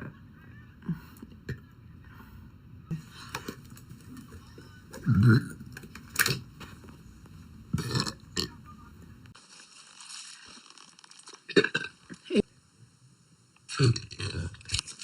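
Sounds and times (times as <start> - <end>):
woman burping: 11.5 - 12.5.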